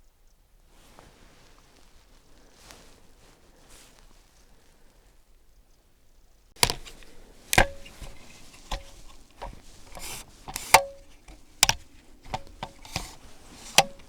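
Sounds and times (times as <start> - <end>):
camera gear knocks and clicks: 6.6 - 14.0.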